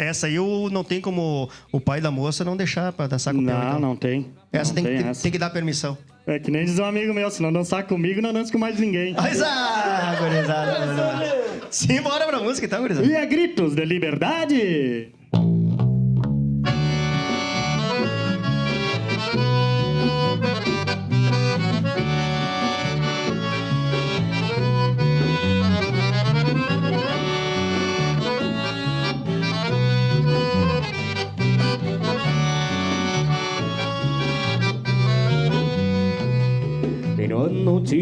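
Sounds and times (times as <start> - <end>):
accordion melody: 4.6 - 5.8, 16.3 - 37.8
rhythmic bass line: 15.3 - 38.0.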